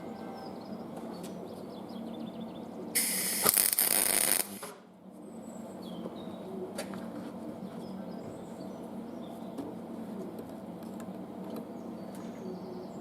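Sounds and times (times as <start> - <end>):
welding arc sizzling: 3.0 - 4.8.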